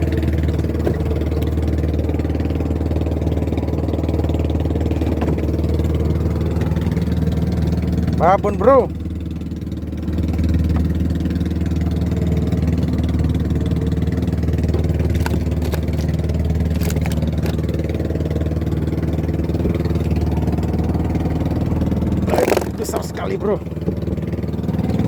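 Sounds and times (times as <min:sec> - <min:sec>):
boat engine running: 0:00.0 - 0:25.0.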